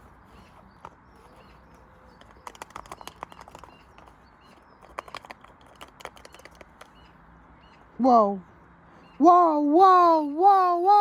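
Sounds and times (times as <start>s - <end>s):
rapid clattering clicks and knocks: 2.1s - 4.1s, 4.7s - 7.0s.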